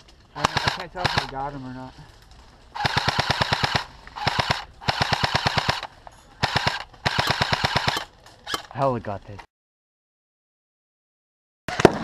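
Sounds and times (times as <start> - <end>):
airsoft rifle firing bursts: 0.4 - 1.4, 2.8 - 8.7.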